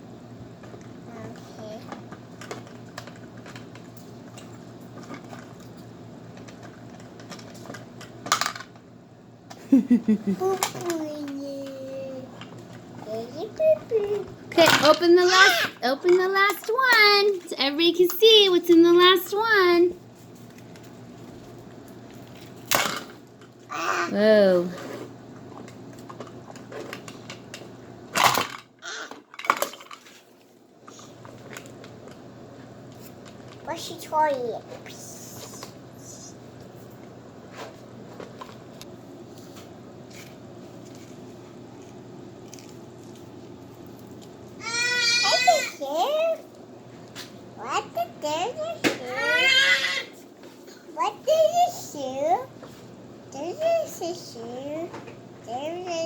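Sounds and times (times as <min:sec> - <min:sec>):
plastic toys clicking and rustling: 0:00.6 - 0:05.8, 0:06.4 - 0:08.8, 0:10.4 - 0:18.4, 0:25.6 - 0:30.4.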